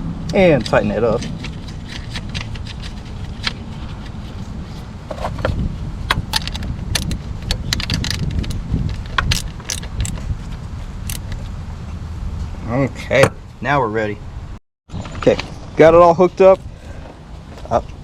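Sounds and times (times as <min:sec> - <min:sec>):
wrench clinking on metal hardware: 0:06.3 - 0:08.6, 0:09.2 - 0:10.2.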